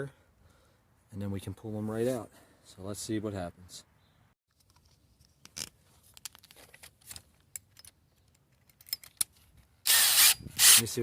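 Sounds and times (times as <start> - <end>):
handling clicks and scrapes: 4.5 - 10.9.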